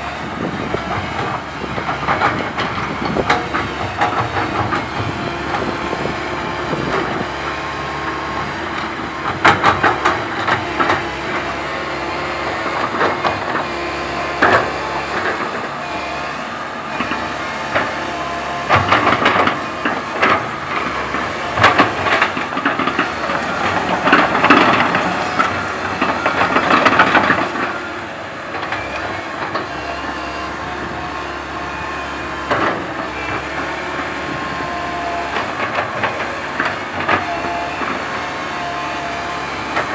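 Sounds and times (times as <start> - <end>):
excavator diesel engine: 0.0 - 39.9.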